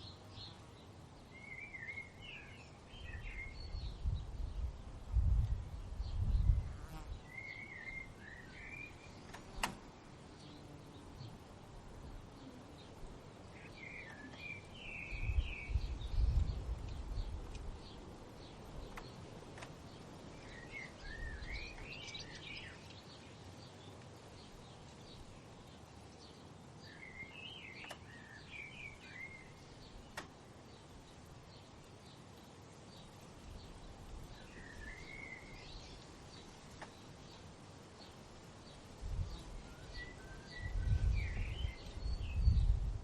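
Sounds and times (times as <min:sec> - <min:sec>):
steady forest hiss: 0:00.0 - 0:43.0
faint high bird chirps: 0:06.1 - 0:09.6, 0:13.6 - 0:17.1, 0:39.2 - 0:42.8.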